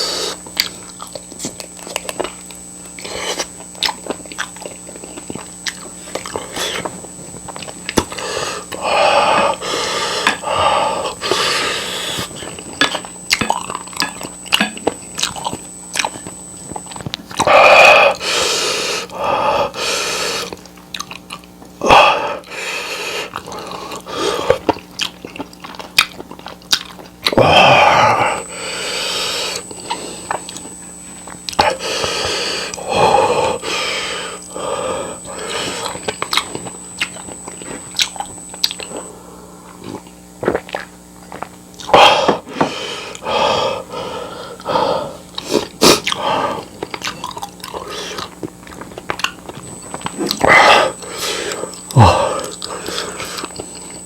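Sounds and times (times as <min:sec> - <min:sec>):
chewing with wet mouth clicks: 0:00.5 - 0:08.8, 0:12.5 - 0:17.5, 0:20.4 - 0:21.8, 0:23.3 - 0:27.4, 0:29.6 - 0:31.8, 0:35.8 - 0:39.1, 0:39.7 - 0:42.0, 0:45.3 - 0:50.5, 0:51.5 - 0:54.0
drawn-out mouth sounds: 0:03.0 - 0:43.2, 0:44.6 - 0:54.0.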